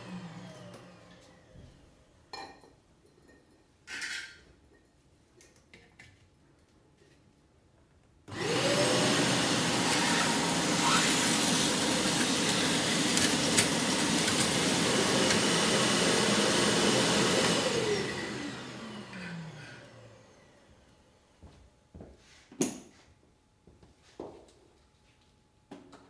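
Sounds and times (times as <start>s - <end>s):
vacuum cleaner running: 0.0s - 2.0s, 8.3s - 21.6s.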